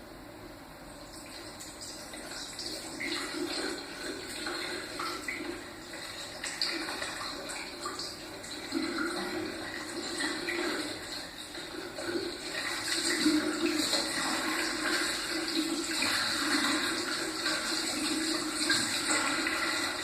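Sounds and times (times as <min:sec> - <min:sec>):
water running from a tap: 0:01.1 - 0:20.0.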